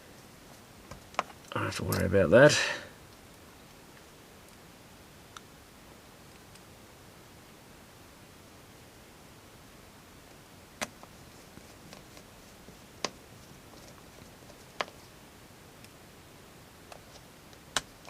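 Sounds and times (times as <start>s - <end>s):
faint ticks of small parts: 0.1s - 2.3s, 3.0s - 6.8s, 10.2s - 16.0s.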